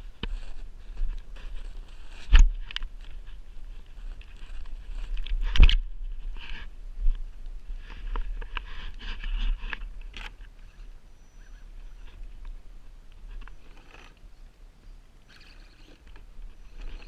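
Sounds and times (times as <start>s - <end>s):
crunching and scraping: 0.0s - 11.0s
wind rumble on microphone: 0.0s - 13.7s.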